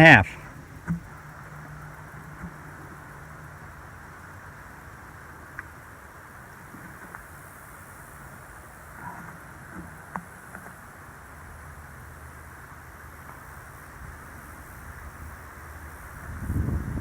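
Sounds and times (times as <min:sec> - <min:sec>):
wind buffeting microphone: 0:16.0 - 0:17.0.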